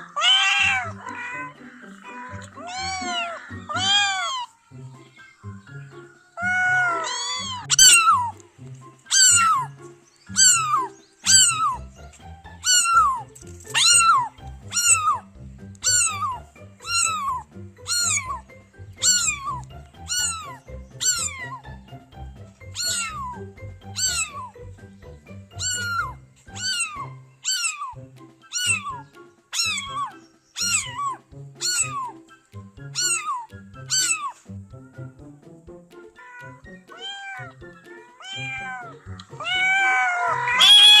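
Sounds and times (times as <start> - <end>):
cat meowing: 0.0 - 4.5, 6.4 - 8.3, 9.1 - 9.7, 10.3 - 11.8, 12.6 - 15.2, 15.8 - 18.4, 19.0 - 21.6, 22.7 - 24.5, 25.6 - 29.0, 29.6 - 32.1, 33.0 - 34.4, 36.2 - 41.0
low music: 0.0 - 41.0.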